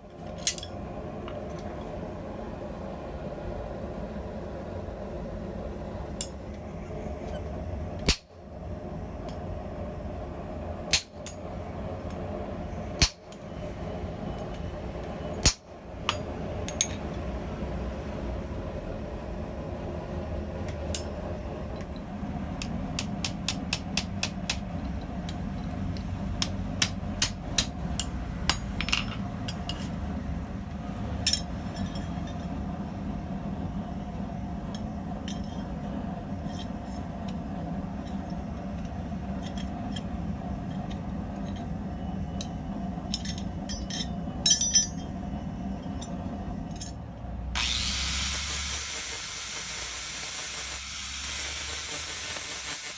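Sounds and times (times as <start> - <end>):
steady low hum: 0.0 - 48.5
heavy hammer strikes on anvil: 26.4 - 29.2.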